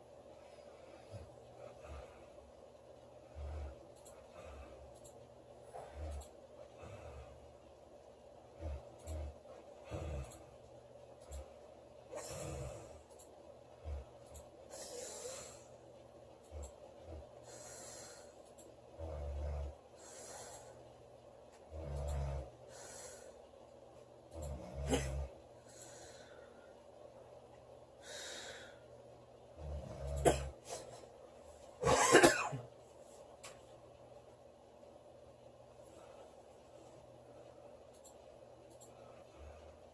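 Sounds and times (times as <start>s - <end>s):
girl snoring: 12.1s - 13.0s, 19.0s - 20.6s, 21.6s - 23.3s, 24.4s - 25.4s, 29.5s - 30.6s
woman rattling snore: 21.6s - 22.5s, 24.3s - 25.8s, 29.6s - 30.8s
loud snort: 24.3s - 25.4s, 29.6s - 30.8s.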